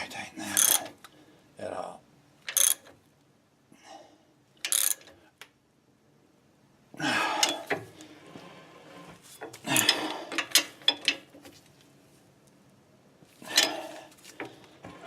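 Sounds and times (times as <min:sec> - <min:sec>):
ratchet wrench ratcheting: 0:00.6 - 0:00.9, 0:02.4 - 0:02.9, 0:04.6 - 0:05.1.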